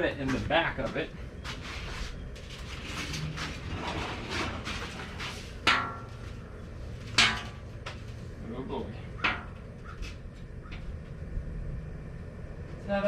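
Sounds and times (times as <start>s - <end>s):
objects rustling and scraping: 0.2s - 8.4s.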